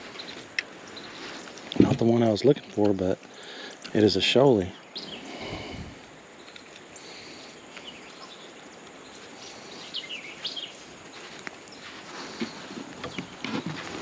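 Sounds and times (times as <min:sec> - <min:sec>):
outdoor background hiss: 0:00.0 - 0:14.0
bird chirps: 0:04.7 - 0:05.8, 0:06.4 - 0:13.8.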